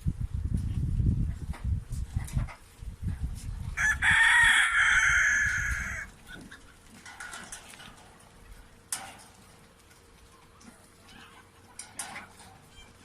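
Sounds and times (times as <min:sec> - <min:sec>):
rooster crowing: 0:03.8 - 0:06.1.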